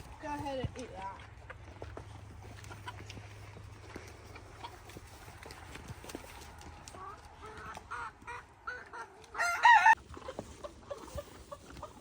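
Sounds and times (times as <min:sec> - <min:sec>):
poultry clucking: 0:00.0 - 0:12.0
loud wavering poultry call: 0:07.0 - 0:10.0.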